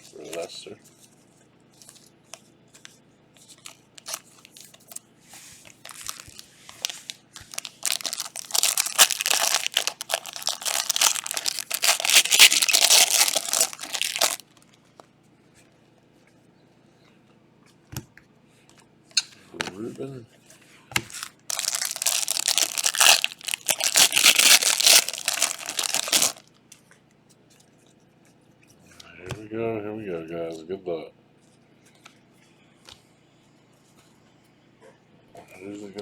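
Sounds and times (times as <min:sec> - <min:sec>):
packaging tearing and crinkling: 0:03.6 - 0:04.8, 0:05.8 - 0:14.6, 0:21.0 - 0:26.4.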